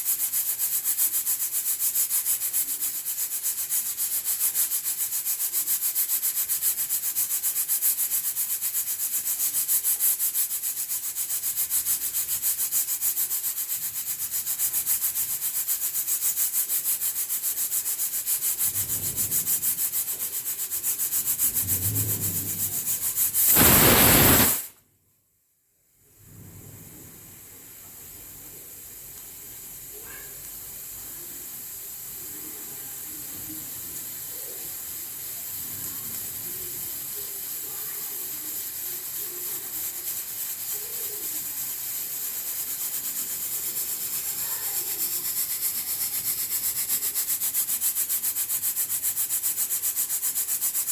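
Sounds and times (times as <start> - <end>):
pressure cooker steam hiss: 0.0 - 24.7, 27.3 - 50.9
pressure cooker whistle: 23.5 - 24.7.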